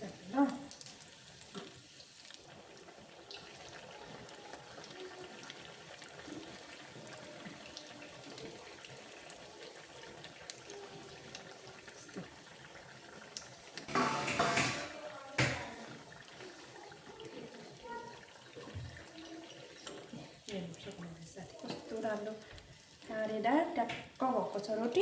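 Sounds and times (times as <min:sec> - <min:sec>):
dough deep-frying in hot oil: 0:00.0 - 0:25.0
small pops and crackles: 0:00.3 - 0:02.5, 0:10.2 - 0:12.3, 0:13.2 - 0:14.0.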